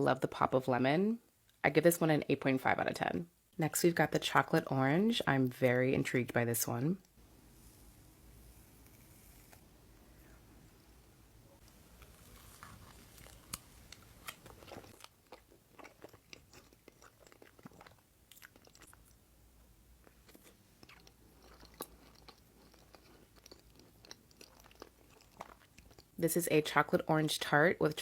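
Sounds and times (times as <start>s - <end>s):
person chewing: 11.6s - 19.2s, 20.0s - 26.2s.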